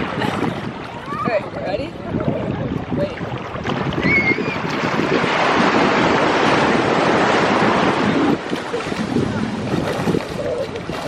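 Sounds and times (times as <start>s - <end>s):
wind buffeting microphone: 0.0s - 11.0s
ocean wave washing in: 2.4s - 11.0s.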